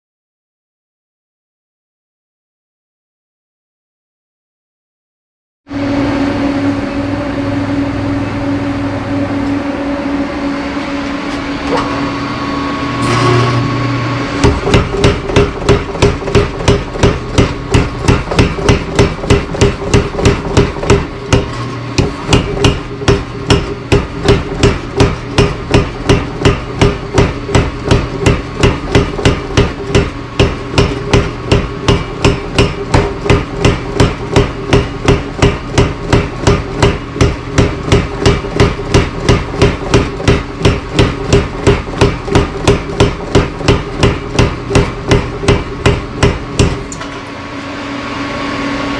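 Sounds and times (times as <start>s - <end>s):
power hammer ram striking: 10.8s - 47.8s.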